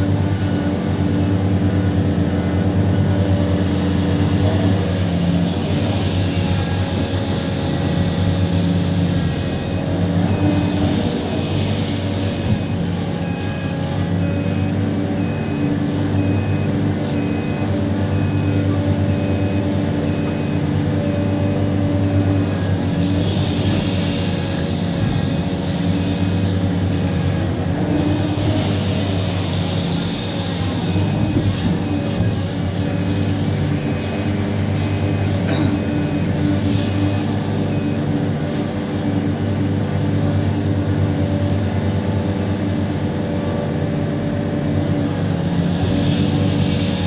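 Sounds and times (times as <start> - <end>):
large diesel engine running: 0.0 - 47.0
backup alarm beeping: 9.2 - 38.2.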